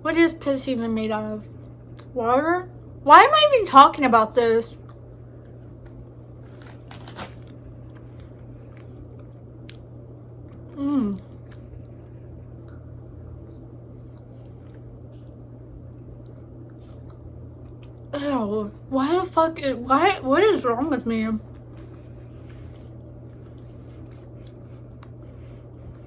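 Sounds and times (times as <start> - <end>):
steady low hum: 0.0 - 26.0
person chewing crackers: 4.8 - 18.1, 21.5 - 26.0.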